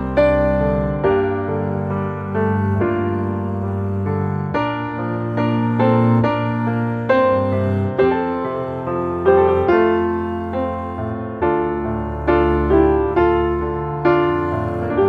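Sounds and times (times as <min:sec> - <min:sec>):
slow piano chords: 0:00.0 - 0:15.0.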